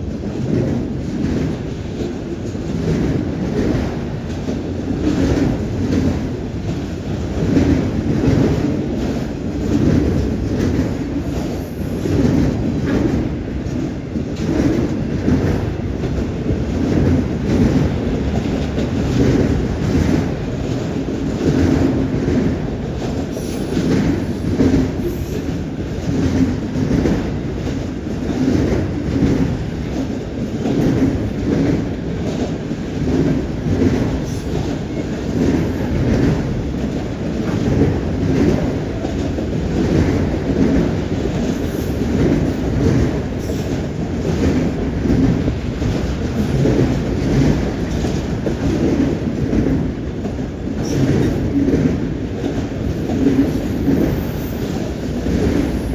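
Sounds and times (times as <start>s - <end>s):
freight train rumbling: 0.0s - 55.9s
train wheels clacking: 0.0s - 55.9s.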